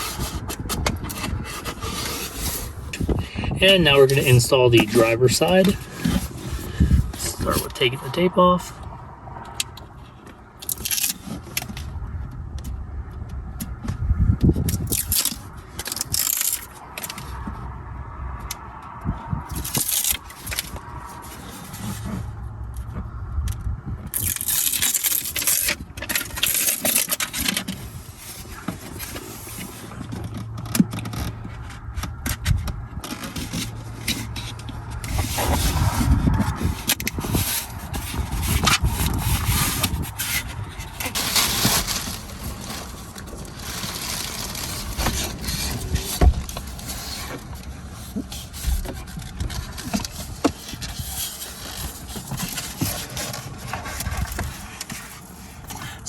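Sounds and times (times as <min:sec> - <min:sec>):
hands scraping plastic: 0:00.0 - 0:12.0, 0:13.6 - 0:17.7, 0:18.4 - 0:23.0, 0:24.1 - 0:56.0
plastic parts rattling: 0:10.6 - 0:12.0, 0:14.6 - 0:17.4, 0:19.5 - 0:22.0, 0:24.1 - 0:56.0.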